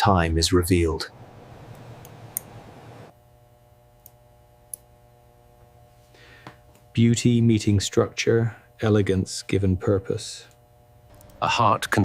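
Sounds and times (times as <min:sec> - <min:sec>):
low steady hum: 0:00.0 - 0:12.0
faint small clicks: 0:04.0 - 0:04.9.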